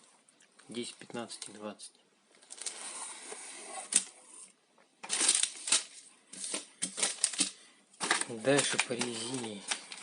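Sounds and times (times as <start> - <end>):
plastic packaging crinkling: 5.0 - 10.0.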